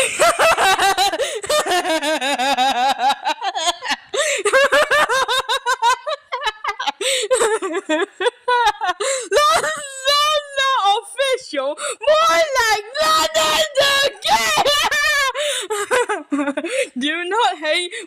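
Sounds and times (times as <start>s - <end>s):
high-pitched wheezing laugh: 0.0s - 10.2s.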